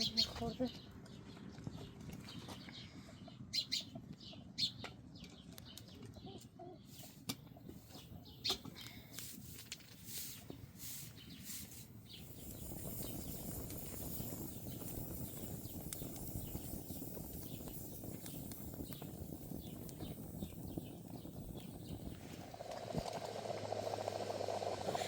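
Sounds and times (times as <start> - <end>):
low outdoor rumble: 11.9 - 25.0.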